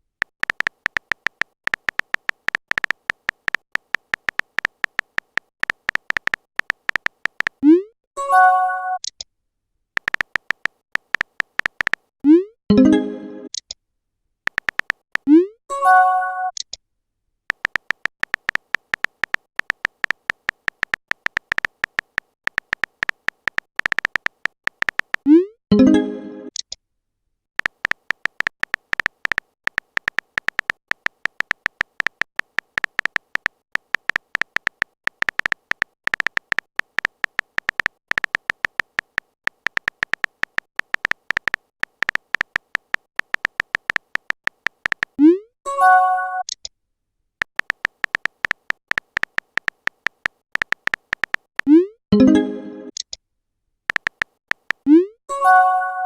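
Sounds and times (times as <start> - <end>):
phone keyboard typing clicks: 0.0 - 7.6, 10.0 - 12.1, 14.5 - 15.4, 17.5 - 26.8, 27.6 - 45.2, 47.4 - 52.3, 53.9 - 55.1.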